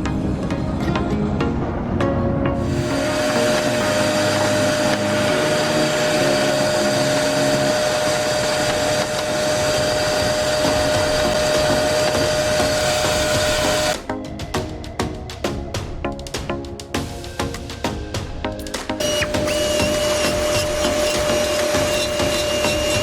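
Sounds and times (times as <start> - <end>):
machine air jet rushing: 2.6 - 14.0.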